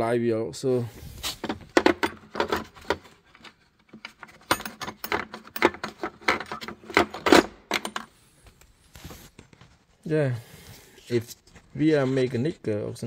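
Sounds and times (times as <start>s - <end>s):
metal tools clicking and knocking: 1.7s - 8.1s.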